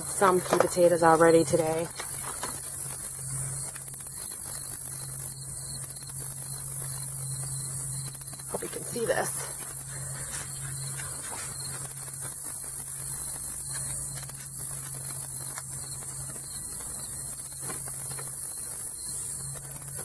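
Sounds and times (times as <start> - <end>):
high-pitched insect chorus: 0.0 - 20.0
low hum: 0.0 - 20.0.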